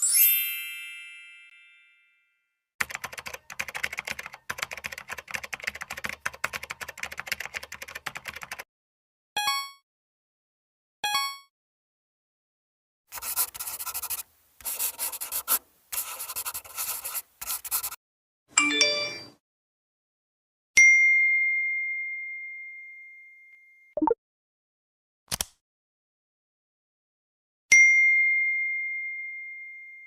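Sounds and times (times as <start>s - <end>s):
jingle of bright tones: 0.0s - 2.6s, 18.6s - 19.4s
bell ding: 18.6s - 19.3s.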